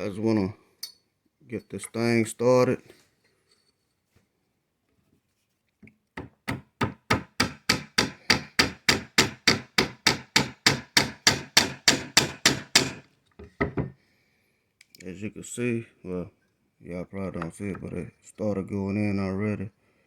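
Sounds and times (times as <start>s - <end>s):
hammer tapping a punch: 6.2s - 13.0s.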